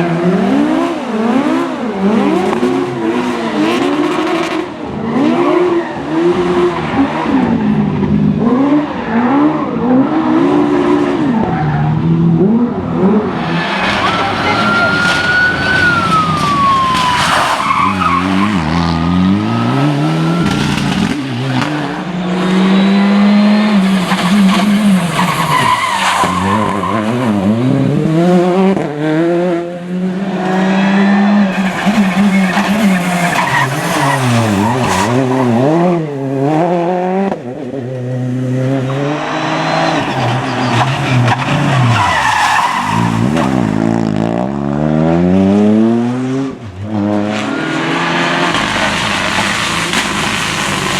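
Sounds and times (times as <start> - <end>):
rally car engine revving: 0.0 - 50.9
tyres squealing and skidding: 11.2 - 28.0, 30.3 - 36.2, 38.7 - 44.0, 47.2 - 50.9.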